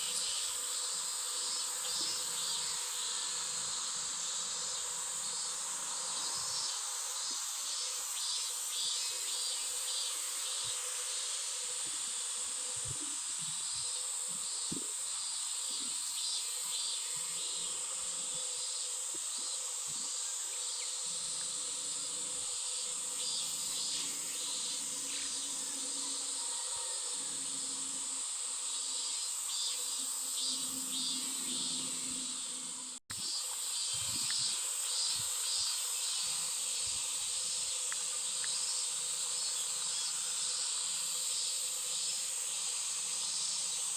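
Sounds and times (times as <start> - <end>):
insect chorus drone: 0.0 - 43.9.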